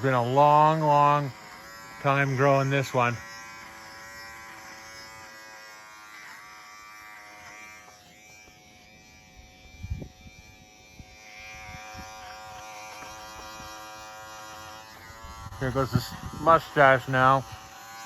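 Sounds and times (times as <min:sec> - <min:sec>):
electric razor buzzing: 0:00.0 - 0:18.0.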